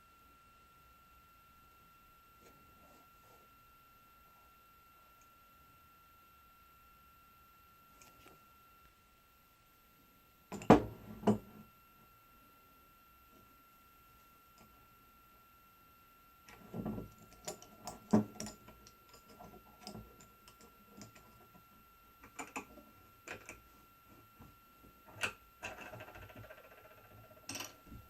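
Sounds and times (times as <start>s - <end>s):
faint high whine: 0.0s - 28.0s
tools clicking and knocking: 16.9s - 21.4s.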